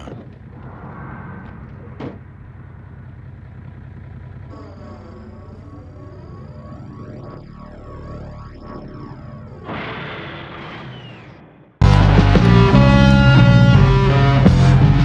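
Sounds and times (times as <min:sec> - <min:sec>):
faint high tones: 0:00.0 - 0:09.8
vehicle engine rumbling: 0:00.0 - 0:15.0
whooshing: 0:00.4 - 0:03.6.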